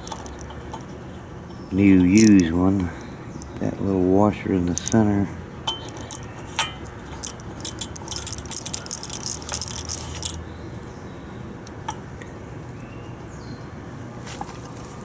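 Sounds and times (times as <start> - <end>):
metal engine parts clinking: 0.0 - 10.4.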